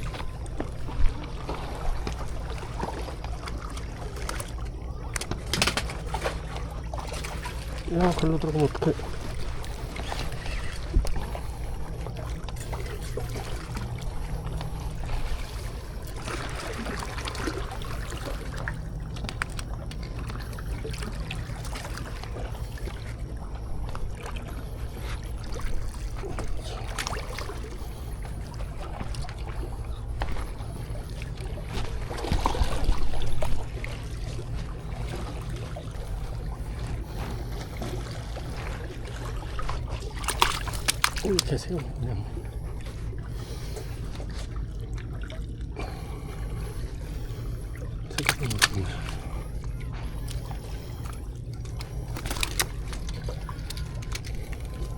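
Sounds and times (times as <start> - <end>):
seawater sloshing at shoreline: 0.0 - 54.9
small clicks: 51.0 - 54.9.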